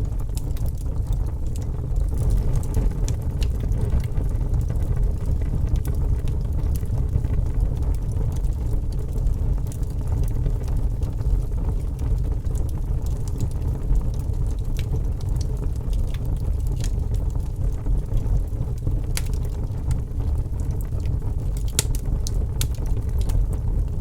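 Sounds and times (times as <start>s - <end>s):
fire crackling: 0.0s - 24.0s
low rumble of burning: 0.0s - 24.0s
small pops and snaps: 13.4s - 17.4s, 19.1s - 20.0s, 20.8s - 23.5s.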